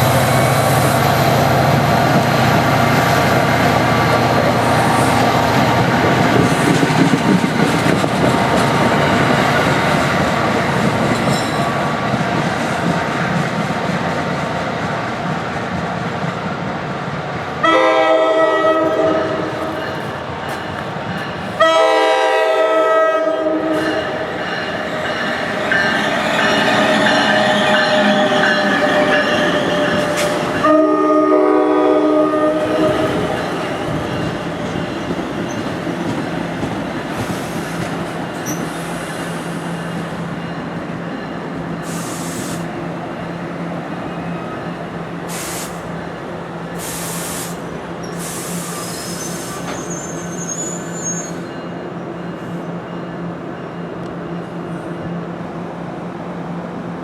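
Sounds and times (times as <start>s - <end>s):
passing train rolling noise: 0.0s - 57.0s
train air horn blasts: 17.6s - 19.8s, 21.6s - 24.2s, 27.0s - 33.4s.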